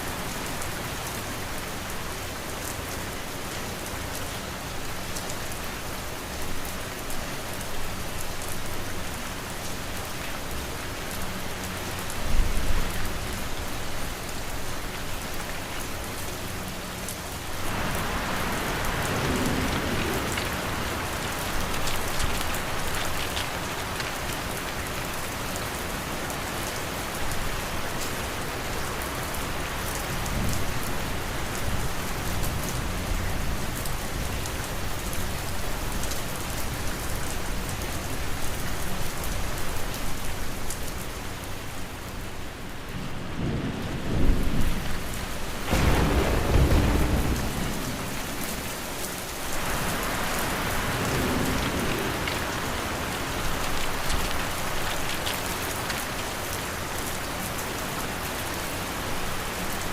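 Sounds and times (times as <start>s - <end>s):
steady rain: 0.0s - 59.9s
rolling thunder: 17.7s - 24.2s, 43.2s - 56.0s.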